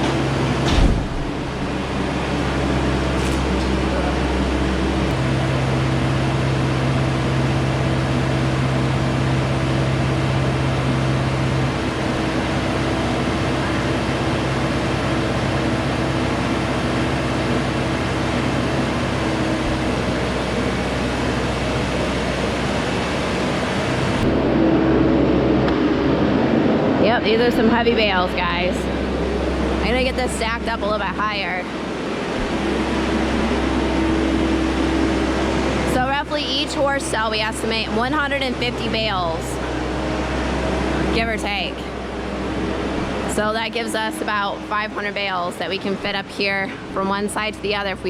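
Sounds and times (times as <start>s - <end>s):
machine humming: 0.0s - 48.0s.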